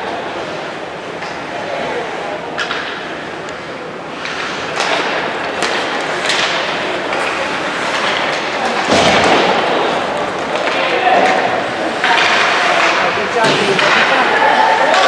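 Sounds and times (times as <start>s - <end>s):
hockey sticks and puck clacking: 1.2s - 1.6s, 2.5s - 15.0s
skates scraping ice: 4.1s - 15.0s.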